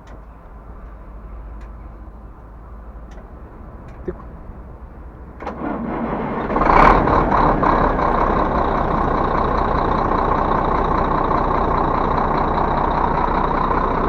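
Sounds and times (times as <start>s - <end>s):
truck diesel engine idling: 0.0s - 14.0s.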